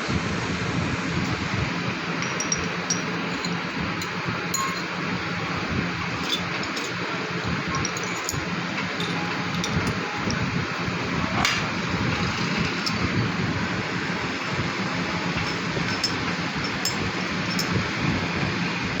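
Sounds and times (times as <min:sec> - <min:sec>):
mechanical hum and hiss: 0:00.0 - 0:19.0
light metallic clinks: 0:02.1 - 0:05.0, 0:06.2 - 0:10.5, 0:15.2 - 0:17.9.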